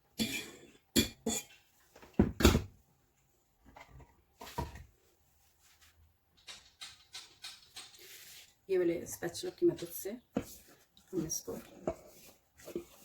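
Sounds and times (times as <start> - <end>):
utensil scraping a mixing bowl: 9.8 - 13.0.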